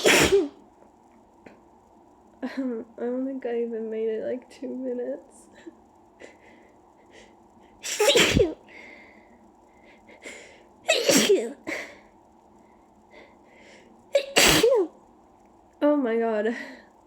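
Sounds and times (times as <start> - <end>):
person sneezing: 0.0 - 0.6, 7.8 - 8.6, 10.9 - 11.9, 14.2 - 14.9
faint breaths: 5.5 - 7.8, 8.6 - 10.8, 11.7 - 14.1.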